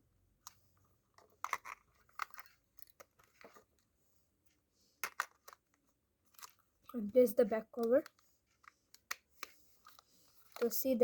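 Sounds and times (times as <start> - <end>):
plastic remote clicks and scrapes: 7.8 - 10.8.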